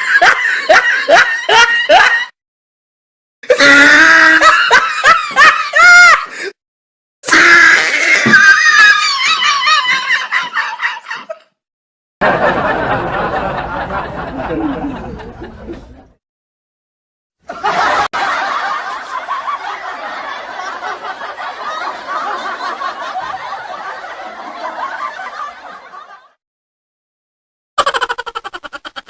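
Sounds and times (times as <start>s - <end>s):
laughter: 0.0s - 2.4s, 3.5s - 6.5s, 8.3s - 11.6s, 12.2s - 16.2s, 17.4s - 26.4s, 27.8s - 29.0s.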